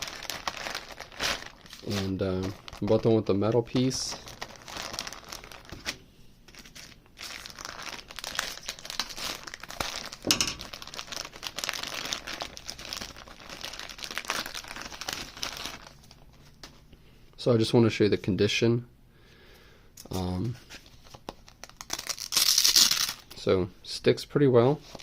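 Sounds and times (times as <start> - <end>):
packaging crinkling and rustling: 0.0 - 16.8, 20.7 - 23.3.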